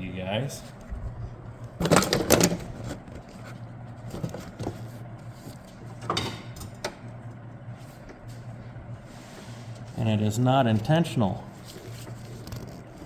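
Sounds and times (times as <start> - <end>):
steady low hum: 0.0 - 13.0
objects knocking and clattering: 1.8 - 3.4.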